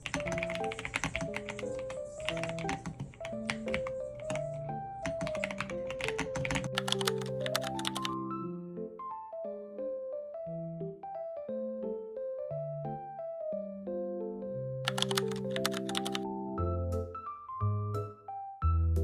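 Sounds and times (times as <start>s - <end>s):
mechanical keyboard typing: 0.0s - 8.2s, 14.9s - 16.3s
melodic background music: 0.0s - 19.0s.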